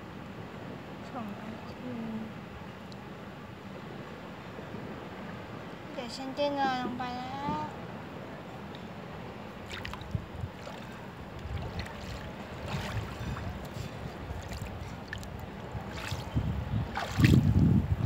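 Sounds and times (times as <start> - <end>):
wind rumbling on microphone: 9.3 - 18.0
water washing on beach: 9.5 - 18.0
faint clicks and splashes: 9.6 - 16.3, 16.9 - 17.6.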